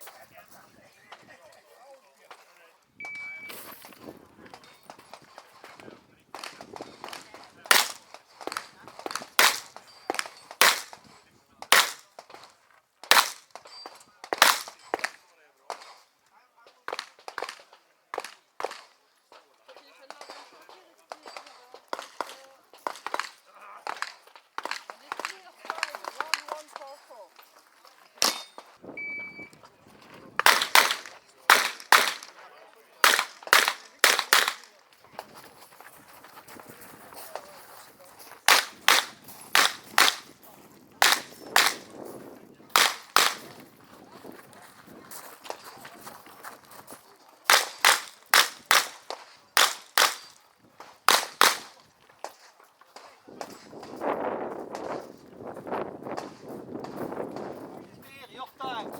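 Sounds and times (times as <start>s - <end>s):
shot timer beep: 3.0s - 3.6s, 28.3s - 29.6s
revolver gunshots: 28.2s - 28.6s, 30.4s - 32.4s, 33.0s - 34.7s, 38.5s - 40.3s, 42.8s - 43.5s, 47.5s - 50.3s, 51.1s - 51.8s.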